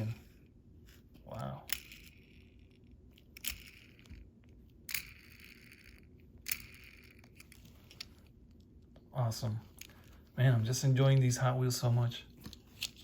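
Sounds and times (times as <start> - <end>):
toy car clicks: 3.3 - 4.2, 4.9 - 7.5.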